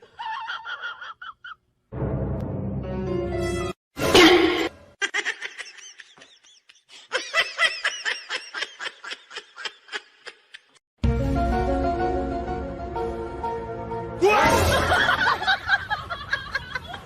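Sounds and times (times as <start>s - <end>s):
person laughing: 0.0s - 1.6s, 4.2s - 10.8s.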